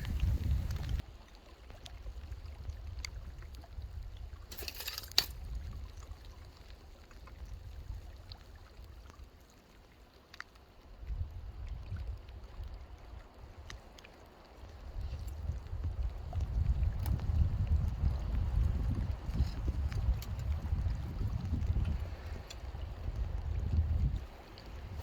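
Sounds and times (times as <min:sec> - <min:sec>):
wind on microphone: 0:00.0 - 0:01.0, 0:14.7 - 0:25.0
faint water sounds: 0:00.0 - 0:25.0.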